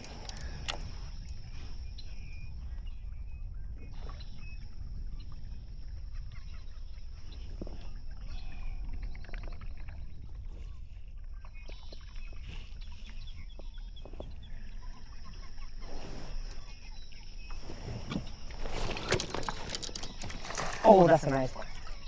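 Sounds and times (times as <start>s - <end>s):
birds calling: 0.0s - 22.0s.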